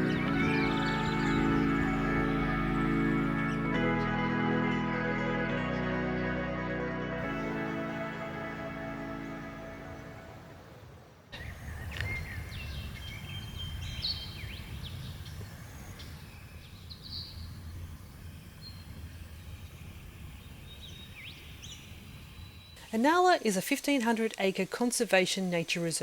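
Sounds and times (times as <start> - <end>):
birds chirping and whistling: 0.0 - 4.1, 11.4 - 22.8
low outdoor rumble: 0.0 - 6.5, 7.1 - 22.8
background music: 0.0 - 10.8.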